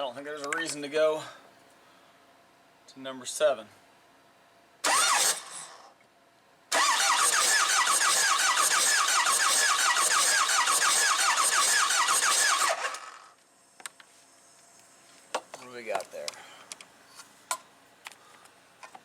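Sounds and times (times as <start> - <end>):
diesel engine cranking with whine: 4.8 - 5.9, 6.7 - 13.4.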